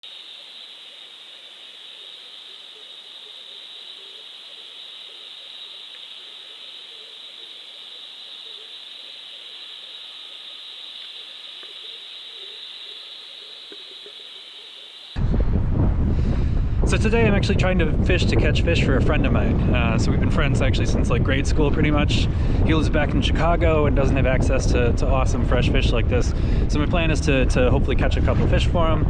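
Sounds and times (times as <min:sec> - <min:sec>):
constant high-pitched tone: 0:00.0 - 0:15.2
steady hiss: 0:00.0 - 0:15.2.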